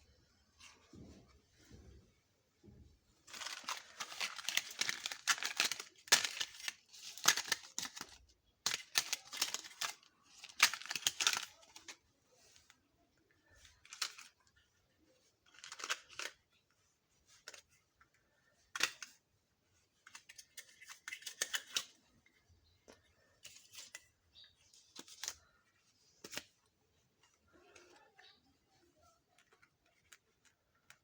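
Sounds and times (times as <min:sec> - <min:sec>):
plastic toy pieces clicking: 0:03.3 - 0:11.9, 0:15.5 - 0:16.4.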